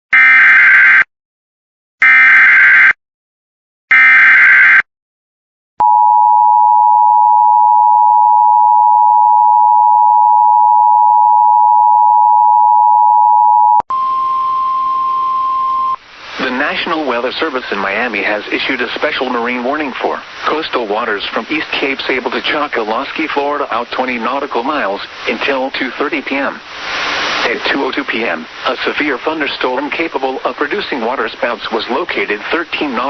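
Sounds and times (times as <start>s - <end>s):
single higher tone: 5.8s - 16.0s
two-tone attention signal: 5.8s - 16.0s
hiss: 26.7s - 27.5s.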